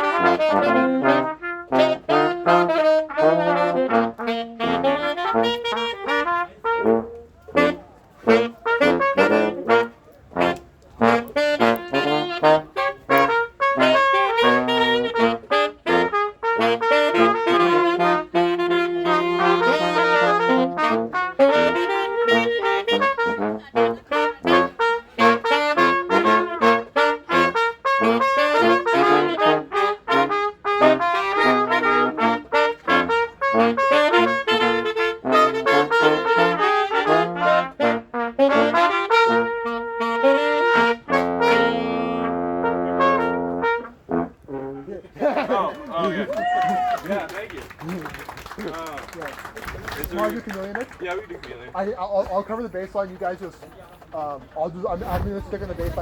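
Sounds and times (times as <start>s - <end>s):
brass players jamming: 0.0s - 56.0s.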